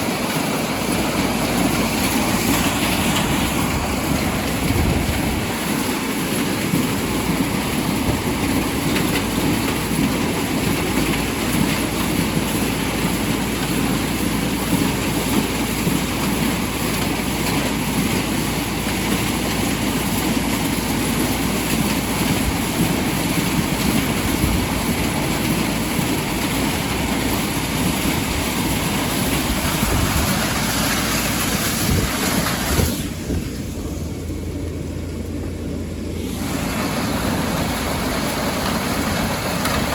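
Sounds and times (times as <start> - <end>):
tractor rattling and clattering: 0.0 - 39.9
low hum: 33.0 - 39.9.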